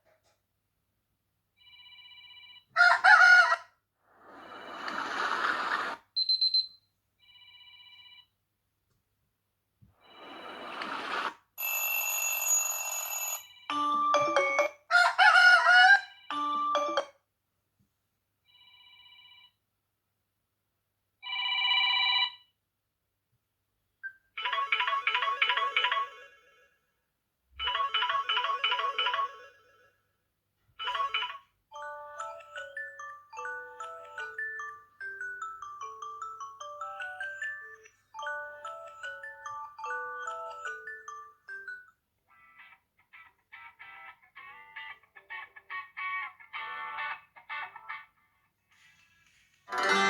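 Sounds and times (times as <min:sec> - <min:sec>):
phone ringtone tunes: 0:11.6 - 0:17.2, 0:24.1 - 0:26.7, 0:27.6 - 0:29.9, 0:30.8 - 0:42.8, 0:49.7 - 0:50.0.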